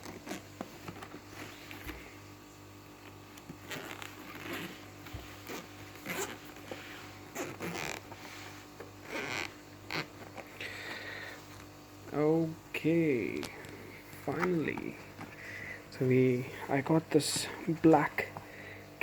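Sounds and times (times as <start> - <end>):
zipper rasping open: 0.0 - 2.2, 3.0 - 10.6.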